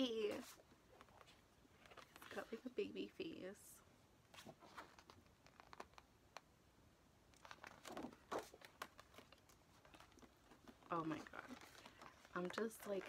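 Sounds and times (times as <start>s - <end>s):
paper rustling: 4.3s - 6.0s, 7.4s - 13.0s
paper crinkles: 7.3s - 13.0s.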